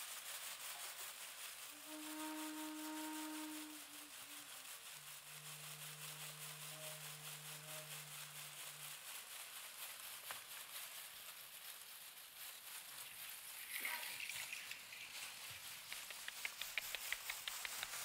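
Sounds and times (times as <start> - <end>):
soft rustling noise: 0.0 - 18.0
held musical notes: 1.5 - 10.8.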